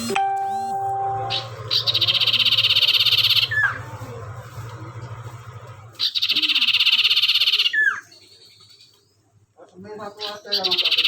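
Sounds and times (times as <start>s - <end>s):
songbird trilling: 1.1s - 3.8s, 6.0s - 8.8s, 10.1s - 11.0s.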